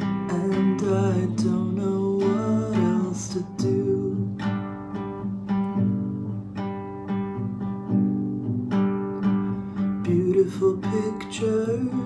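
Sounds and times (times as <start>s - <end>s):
dream-pop guitar and bass: 0.0s - 5.3s, 9.4s - 12.0s.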